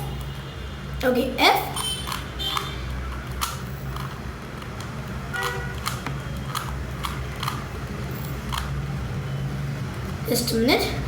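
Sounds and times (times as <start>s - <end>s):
puzzle cube clicking as turned: 1.8s - 8.8s.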